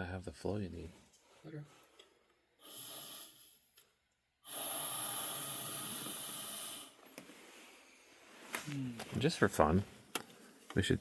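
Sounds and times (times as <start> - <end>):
air hissing through tube: 2.6 - 3.7, 4.4 - 7.9.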